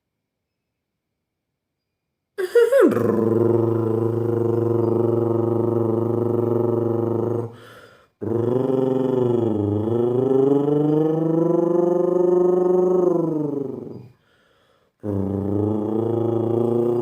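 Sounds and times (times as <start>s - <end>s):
person imitating motorcycle engine: 2.4s - 14.1s, 15.0s - 17.0s
person breathing: 7.5s - 8.2s, 14.0s - 15.0s.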